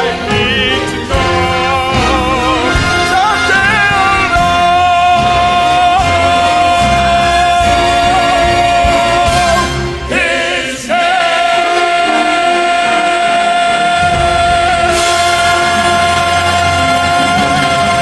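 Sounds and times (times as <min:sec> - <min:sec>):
band accompaniment: 0:00.0 - 0:18.0
deep bass: 0:14.0 - 0:18.0.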